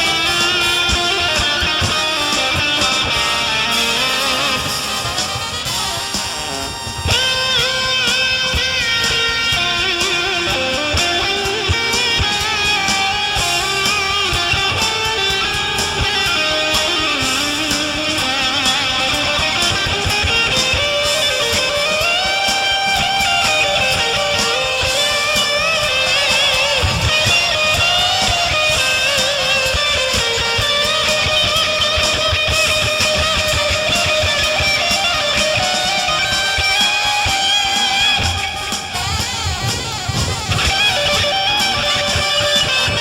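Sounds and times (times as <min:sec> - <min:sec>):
blues band jamming: 0:00.0 - 0:43.0
electric guitar bending notes: 0:00.0 - 0:43.0.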